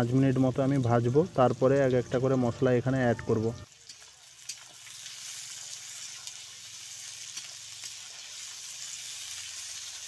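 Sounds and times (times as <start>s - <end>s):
onions sizzling in oil: 0.0s - 10.0s
crackles and pops: 3.5s - 10.0s.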